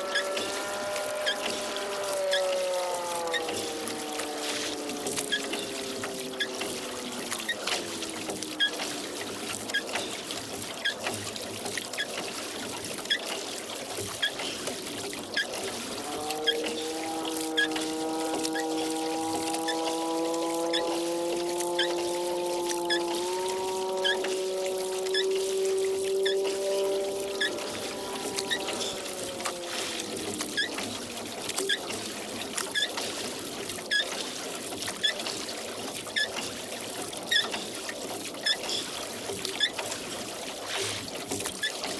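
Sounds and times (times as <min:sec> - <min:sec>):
oar squeaking: 0:00.0 - 0:08.9, 0:15.3 - 0:32.0, 0:32.6 - 0:33.0, 0:33.9 - 0:34.2, 0:37.3 - 0:37.7, 0:39.6 - 0:39.9
water trickling off oars: 0:00.0 - 0:41.9
oarlocks squeaking: 0:20.6 - 0:30.8.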